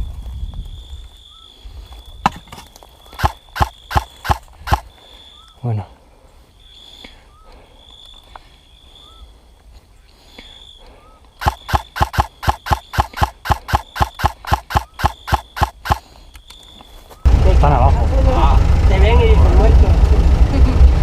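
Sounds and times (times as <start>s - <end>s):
faint high chirps: 2.9s - 5.7s, 6.6s - 9.4s
airsoft gun firing: 3.2s - 4.9s, 11.4s - 16.0s.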